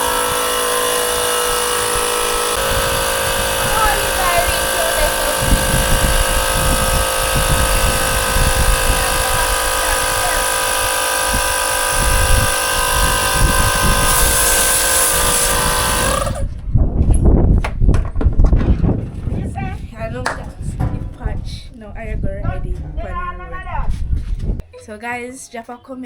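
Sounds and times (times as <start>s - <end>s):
electric air pump whining: 0.0s - 16.7s
wind rumble on microphone: 1.5s - 24.6s.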